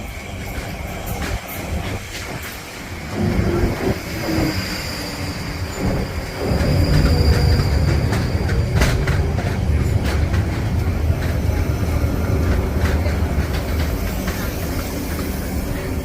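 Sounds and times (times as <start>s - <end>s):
wheels clicking over rail joints: 0.0s - 3.4s, 5.8s - 16.0s
train wheels rumbling on track: 0.0s - 16.0s.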